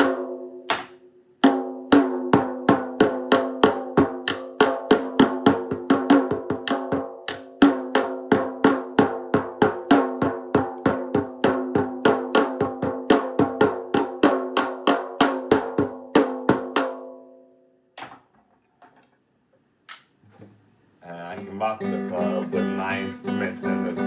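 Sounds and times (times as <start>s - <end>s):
drum beaten fast: 0.0s - 17.0s.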